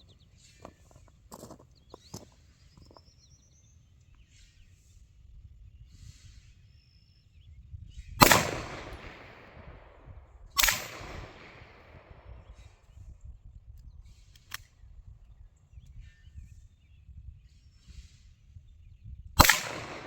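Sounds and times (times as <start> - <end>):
gunshots with echo: 8.2 - 10.0, 10.6 - 12.4, 19.4 - 20.0.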